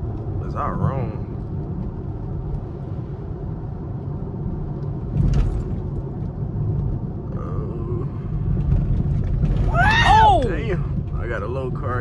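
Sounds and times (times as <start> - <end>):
car engine low rumble: 0.0 - 12.0
tyre noise on wet road: 8.6 - 11.2.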